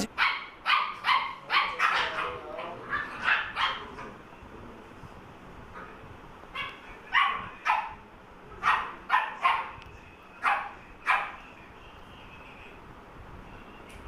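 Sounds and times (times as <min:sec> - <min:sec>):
puppy barking: 0:00.0 - 0:04.0, 0:06.6 - 0:08.0, 0:08.6 - 0:09.8, 0:10.4 - 0:11.4.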